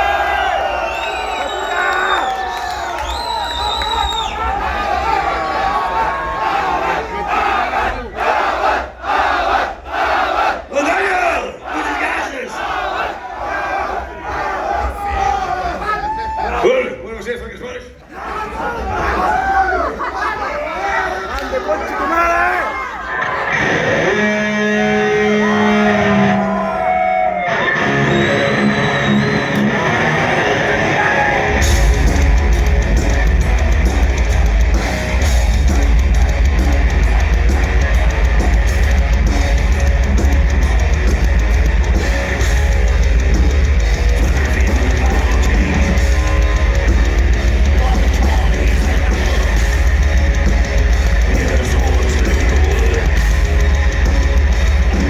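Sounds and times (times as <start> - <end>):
electric guitar: 23.1 - 55.0
heavy metal band playing: 23.2 - 55.0
drums and bass: 27.9 - 55.0.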